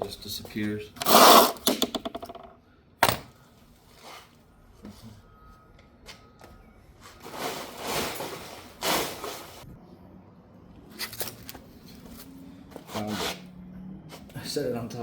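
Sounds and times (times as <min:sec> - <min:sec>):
knocks of handling tools: 0:00.0 - 0:03.4
rustling: 0:07.0 - 0:09.7.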